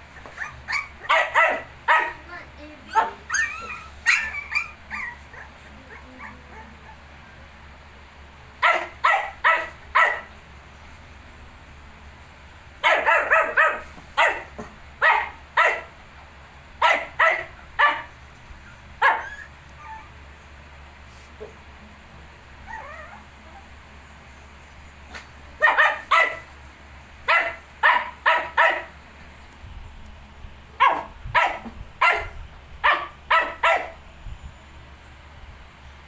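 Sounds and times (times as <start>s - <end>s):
small dogs yipping and barking: 0.0s - 7.7s, 8.6s - 10.4s, 12.8s - 16.0s, 16.8s - 21.6s, 22.6s - 24.2s, 24.8s - 29.0s, 30.8s - 34.3s.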